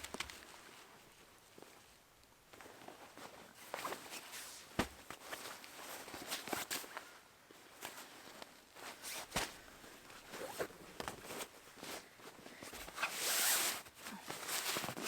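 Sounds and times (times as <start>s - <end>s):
rustling and handling: 0.0s - 15.0s
zipper being drawn: 13.0s - 13.8s.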